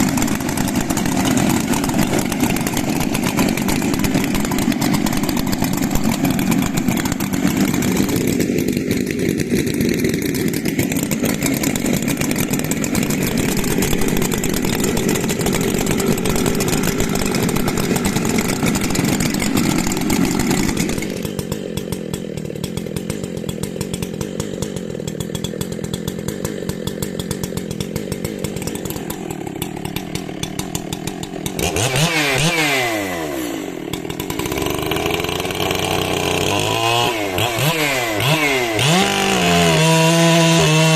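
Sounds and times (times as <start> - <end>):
chainsaw running: 0.0 - 40.9.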